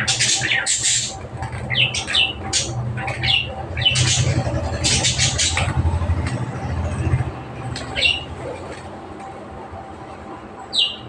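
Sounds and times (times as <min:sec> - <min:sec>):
budgerigars chirping and squawking: 0:00.0 - 0:06.2, 0:07.7 - 0:08.4, 0:10.7 - 0:11.0.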